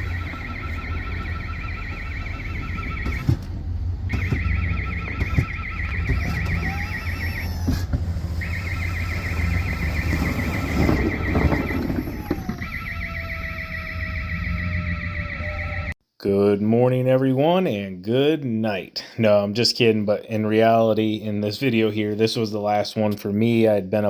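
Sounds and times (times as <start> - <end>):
warbling two-pitch warning alarm: 0.0 - 3.4, 4.1 - 7.8, 8.4 - 16.0
knocks and squeaks: 0.0 - 15.9.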